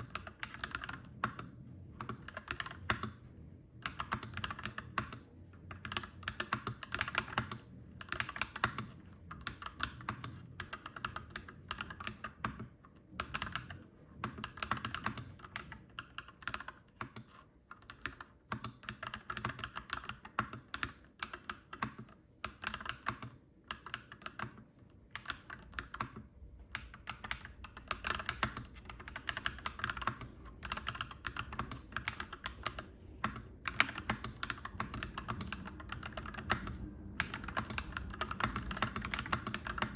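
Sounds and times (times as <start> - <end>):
mechanical keyboard typing: 0.0 - 39.9
low background rumble: 25.3 - 39.9.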